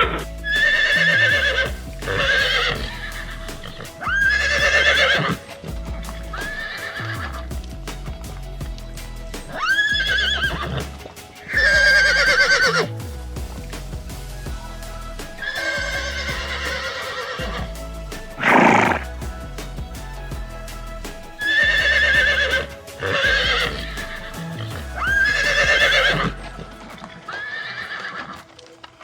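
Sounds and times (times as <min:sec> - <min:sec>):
horse whinnying: 0:00.0 - 0:05.4, 0:11.5 - 0:12.9, 0:21.5 - 0:28.4
background music: 0:00.0 - 0:29.0.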